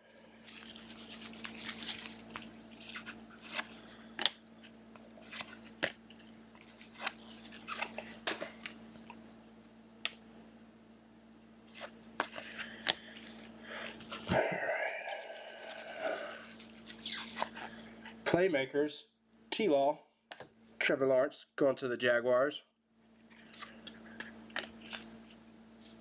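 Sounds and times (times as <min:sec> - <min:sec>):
packaging crinkling and rustling: 0:00.2 - 0:09.3, 0:11.7 - 0:14.4, 0:15.0 - 0:18.2, 0:23.3 - 0:26.0.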